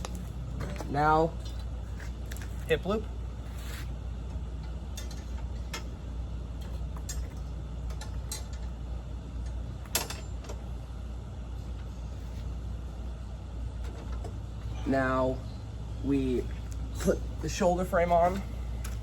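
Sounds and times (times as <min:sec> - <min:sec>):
steady low hum: 0:00.0 - 0:19.0
frame parts clicking and knocking: 0:04.6 - 0:06.0, 0:06.6 - 0:08.8, 0:09.4 - 0:10.7.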